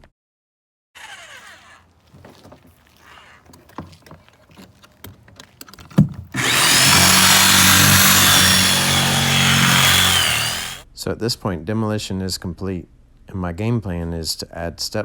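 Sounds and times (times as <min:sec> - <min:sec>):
power tool whining: 0:01.0 - 0:02.4, 0:06.4 - 0:10.8.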